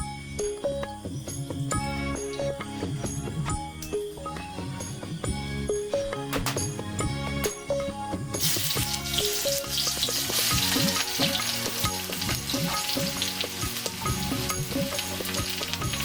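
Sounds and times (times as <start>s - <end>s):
background music: 0.0s - 16.0s
food sizzling in a pan: 8.4s - 16.0s.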